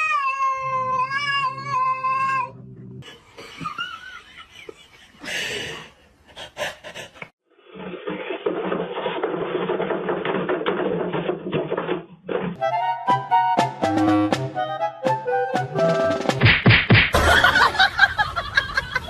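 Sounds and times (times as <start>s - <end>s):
cat yowling: 0.0s - 2.6s.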